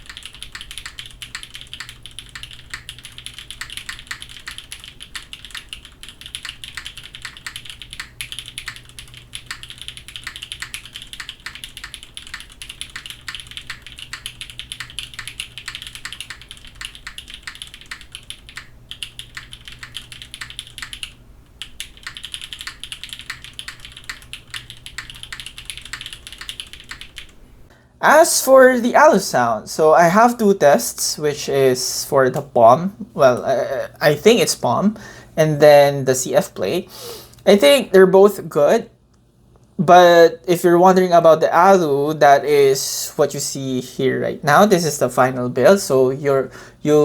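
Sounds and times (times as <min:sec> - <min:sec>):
mechanical keyboard typing: 0:00.0 - 0:27.4.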